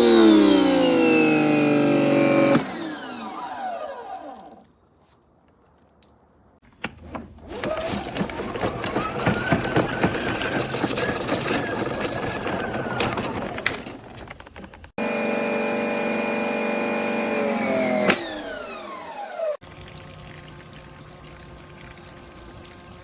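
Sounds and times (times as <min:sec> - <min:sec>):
pressure washer motor whine: 0:00.0 - 0:04.6, 0:15.0 - 0:19.6
rattle: 0:07.7 - 0:14.9.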